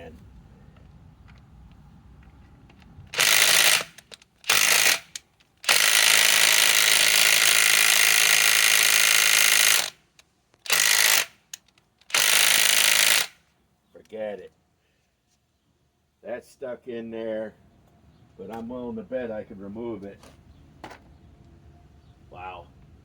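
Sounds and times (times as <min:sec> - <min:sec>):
impact wrench hammering: 0:03.2 - 0:10.0, 0:10.7 - 0:13.4.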